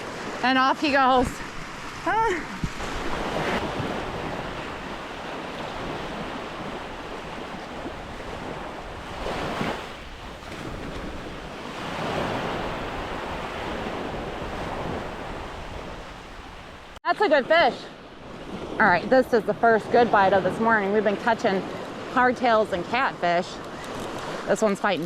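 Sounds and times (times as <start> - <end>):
surf washing onto beach: 0.0 - 17.0
wind buffeting microphone: 0.0 - 17.0.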